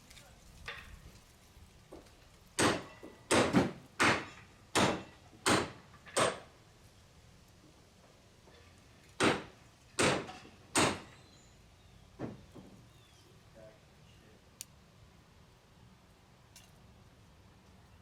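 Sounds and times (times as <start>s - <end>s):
sharp knocks: 2.6s - 6.5s, 9.2s - 11.2s.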